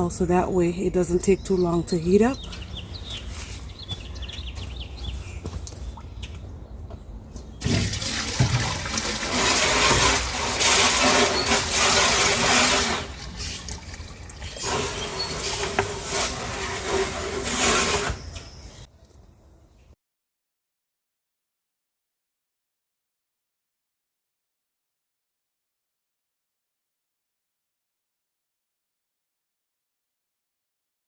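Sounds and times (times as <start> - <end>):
water pouring into a pot: 7.6 - 14.8.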